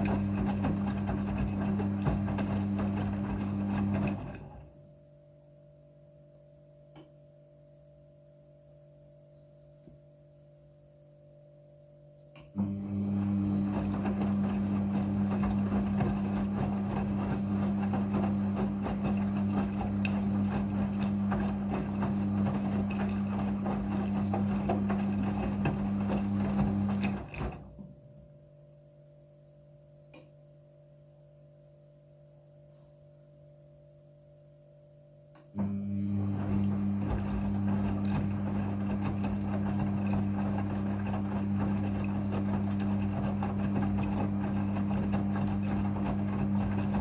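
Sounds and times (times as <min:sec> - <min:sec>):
washing machine pump hum: 0:00.0 - 0:05.0, 0:12.6 - 0:28.3, 0:35.6 - 0:47.0.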